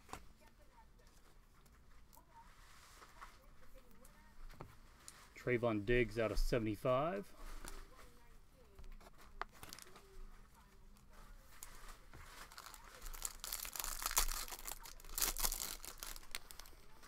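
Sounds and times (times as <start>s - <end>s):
card pack wrapper tearing and crinkling: 9.5s - 10.0s, 12.4s - 16.9s.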